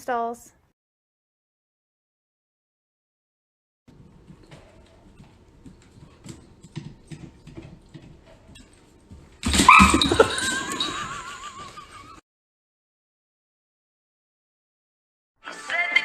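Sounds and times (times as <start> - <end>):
faint tapping and rustling: 3.9 - 9.4.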